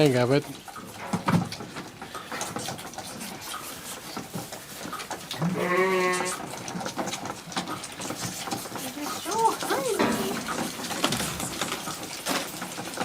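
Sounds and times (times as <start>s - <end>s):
goat kid bleating: 5.4s - 6.4s.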